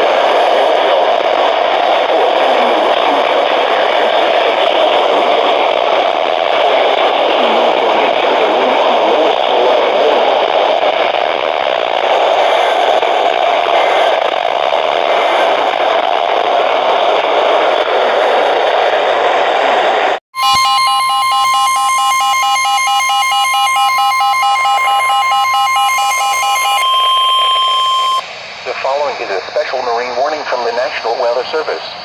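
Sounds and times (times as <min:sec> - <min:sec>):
radio static hiss: 0:00.0 - 0:18.2, 0:26.3 - 0:32.0
electronic alert data tones: 0:20.4 - 0:28.2.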